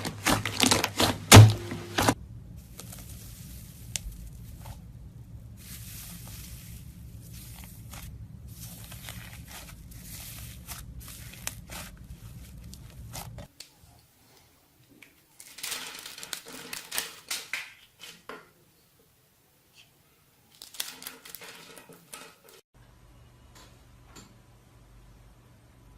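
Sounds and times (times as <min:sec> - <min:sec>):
low hum: 0:01.4 - 0:13.5.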